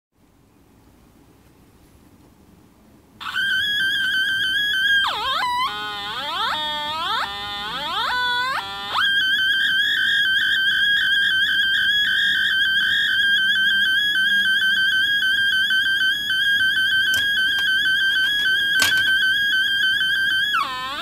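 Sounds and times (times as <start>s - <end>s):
sharp clicks: 17.0s - 19.3s.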